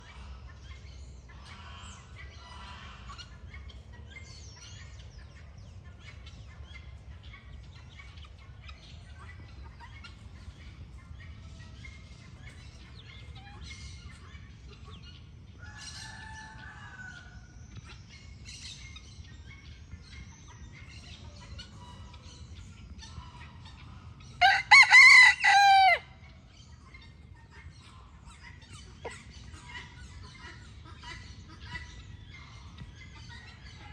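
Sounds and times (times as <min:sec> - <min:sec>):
low steady background rumble: 0:00.0 - 0:33.9
rooster crowing: 0:24.4 - 0:26.1.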